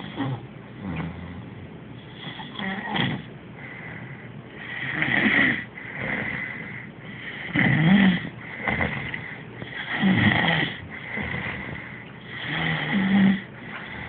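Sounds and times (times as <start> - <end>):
person snoring: 4.6 - 14.0.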